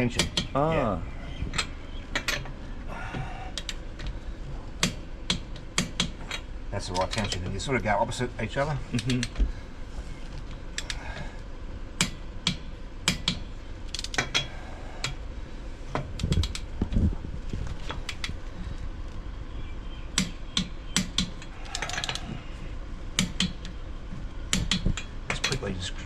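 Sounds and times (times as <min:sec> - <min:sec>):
torque wrench clicks: 0:12.0 - 0:15.2.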